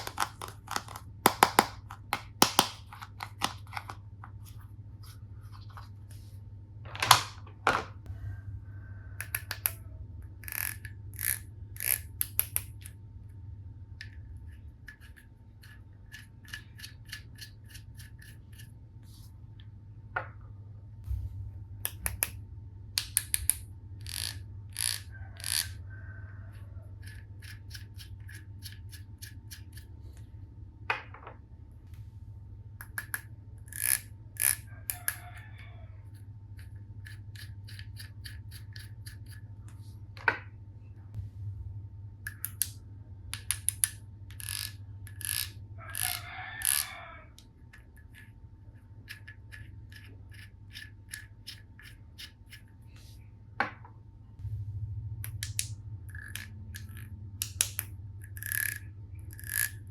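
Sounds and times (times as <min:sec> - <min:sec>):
steady low hum: 0:00.0 - 0:46.4, 0:47.0 - 0:59.9
plastic toy pieces clicking: 0:23.0 - 0:25.8, 0:43.3 - 0:46.9, 0:55.4 - 0:59.8.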